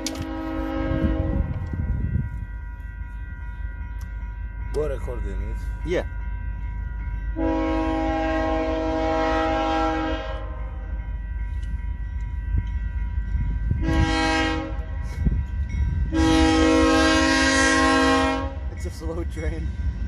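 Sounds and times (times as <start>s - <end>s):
train horn blasts: 0.0s - 1.8s, 7.4s - 10.8s, 13.7s - 15.0s, 16.0s - 18.8s
low rumble of passing train: 0.0s - 20.0s.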